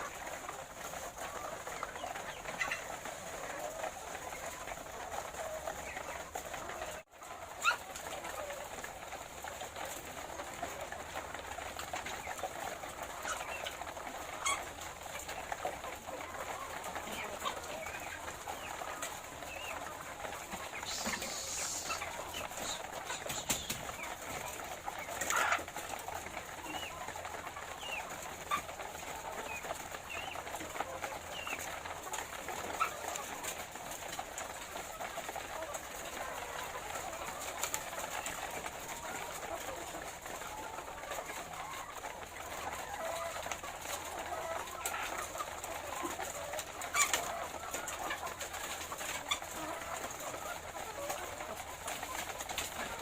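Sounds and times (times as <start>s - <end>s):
hens clucking: 0.0s - 53.0s
sharper hen calls: 20.8s - 23.8s.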